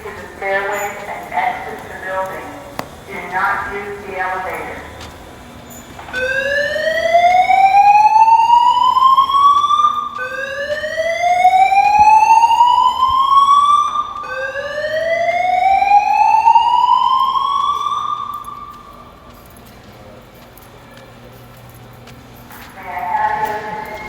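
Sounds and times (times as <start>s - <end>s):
fire alarm whoop tone: 5.6s - 19.5s, 22.8s - 24.0s.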